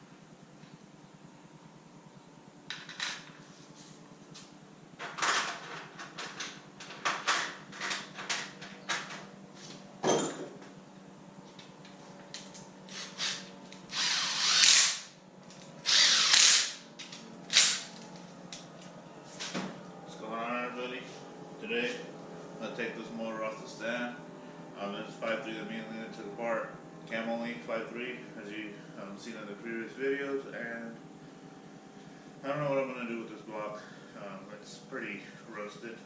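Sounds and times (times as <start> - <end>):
steady low hum: 0.0 - 36.0
tools and metal parts clattering: 2.7 - 3.5, 5.0 - 9.3, 10.0 - 10.7
rasping bursts: 12.9 - 15.2, 15.8 - 16.8.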